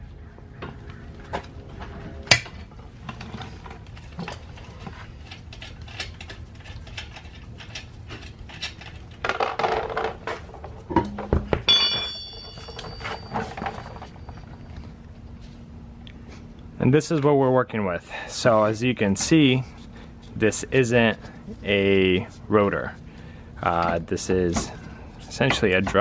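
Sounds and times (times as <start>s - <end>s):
scraping clatter of metal: 1.8s - 14.9s
heavy clunk: 10.9s - 14.0s
ringing metallic clang: 10.9s - 14.8s.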